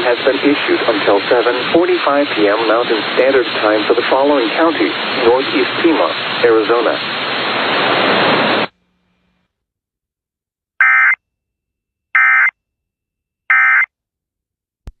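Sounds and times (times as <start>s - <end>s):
static hiss: 0.1s - 9.5s.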